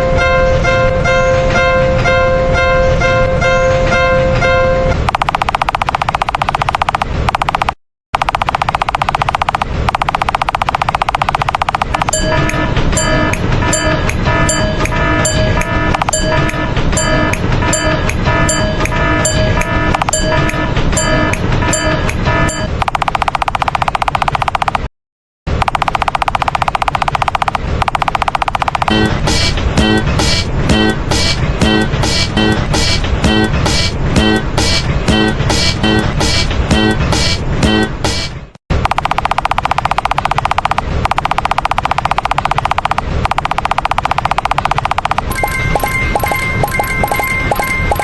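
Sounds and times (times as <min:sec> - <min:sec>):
railroad crossing bell dinging rapidly: 0:11.9 - 0:22.8, 0:45.3 - 0:48.0
low rumble: 0:28.9 - 0:37.7.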